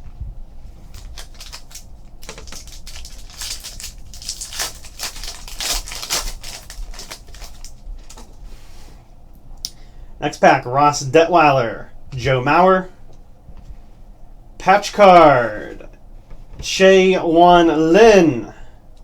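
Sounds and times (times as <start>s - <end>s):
foil wrapper tearing and crinkling: 0.9s - 8.3s.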